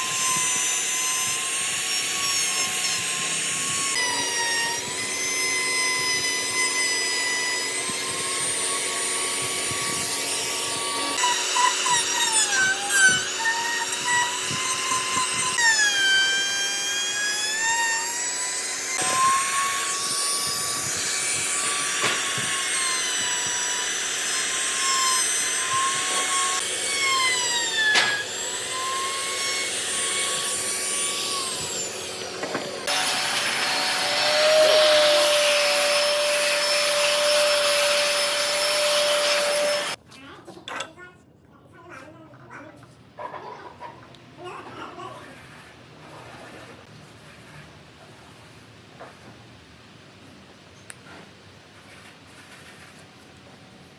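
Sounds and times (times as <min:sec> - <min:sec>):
power tool motor whine: 0:00.0 - 0:40.0
wood rasping: 0:00.0 - 0:40.0.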